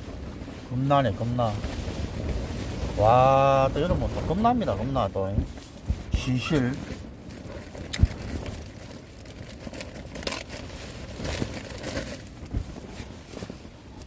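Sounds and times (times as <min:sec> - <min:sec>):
rain: 0:00.0 - 0:05.4
tent fabric shaking in wind: 0:00.0 - 0:14.0.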